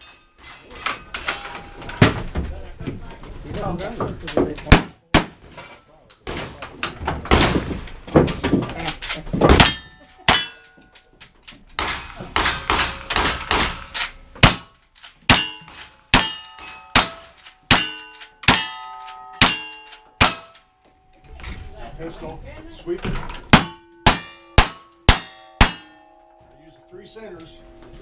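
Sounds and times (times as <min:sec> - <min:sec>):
steel target clanging: 0:04.0 - 0:11.1, 0:11.7 - 0:20.8, 0:23.0 - 0:28.0.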